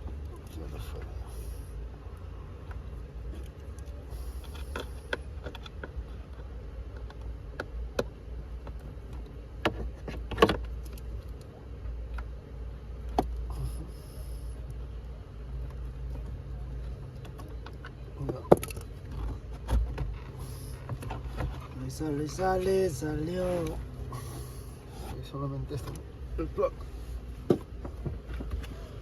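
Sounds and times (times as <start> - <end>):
steady low hum: 0.0 - 29.0
plastic and metal clicks and knocks: 17.2 - 20.2.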